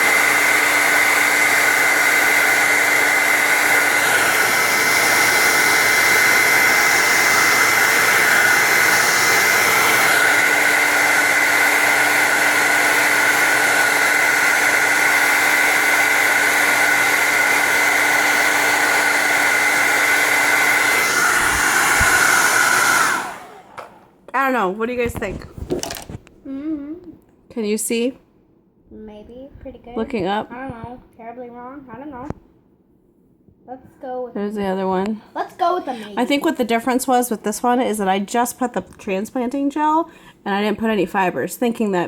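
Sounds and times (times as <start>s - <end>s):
blow dryer running: 0.0s - 26.0s, 35.6s - 38.7s.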